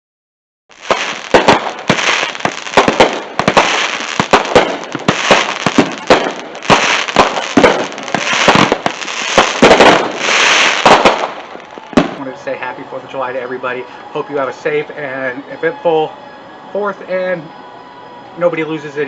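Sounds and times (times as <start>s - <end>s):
crackling hiss: 0.7s - 12.8s
fireworks cracks and bangs: 0.7s - 12.8s.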